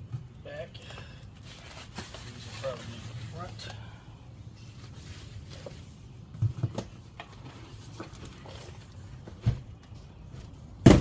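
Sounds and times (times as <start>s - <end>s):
dull knocks of parts set down: 10.8s - 11.0s.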